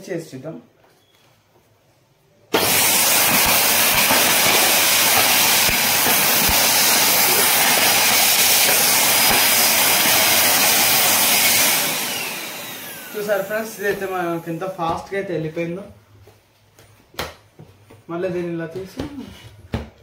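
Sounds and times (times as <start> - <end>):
vacuum cleaner suction hiss: 2.5 - 15.0.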